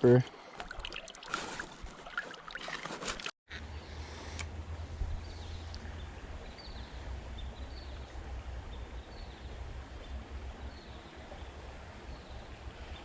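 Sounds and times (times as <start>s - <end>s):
creek water running: 0.0s - 3.4s.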